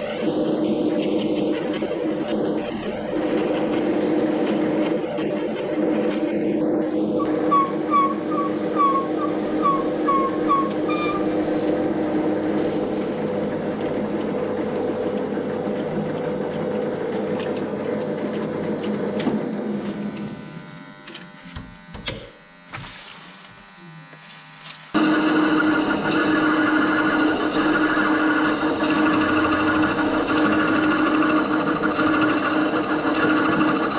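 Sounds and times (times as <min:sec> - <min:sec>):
lathe humming: 0:00.0 - 0:33.9
short high squeaks: 0:07.5 - 0:11.3.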